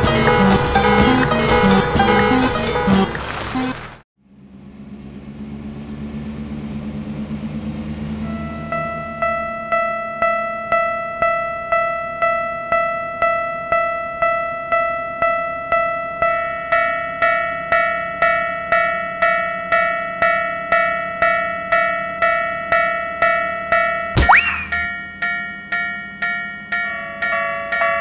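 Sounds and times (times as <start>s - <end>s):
brighter bell tone: 0.0s - 3.8s
railroad crossing bell dinging: 0.0s - 4.0s, 8.2s - 17.0s.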